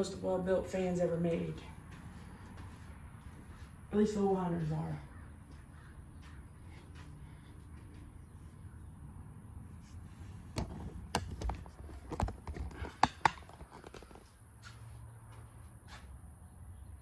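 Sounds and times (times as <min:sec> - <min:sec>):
sharp clicks and knocks: 0:10.5 - 0:14.2.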